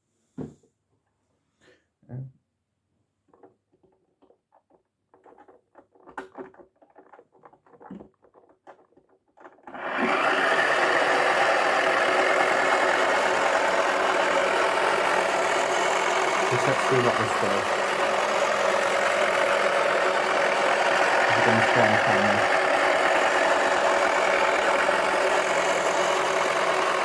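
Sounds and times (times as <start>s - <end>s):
small electric motor buzzing: 9.7s - 27.0s.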